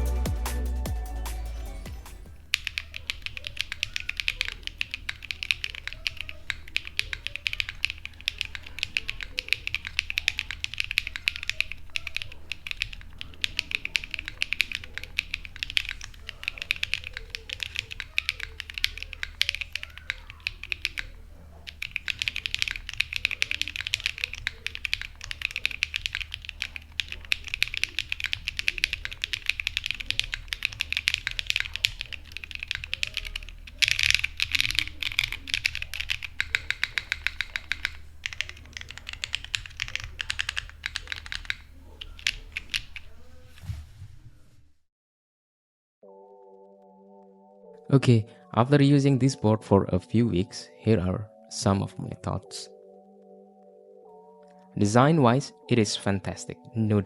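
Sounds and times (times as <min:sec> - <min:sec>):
fast keyboard typing: 0:00.9 - 0:43.2.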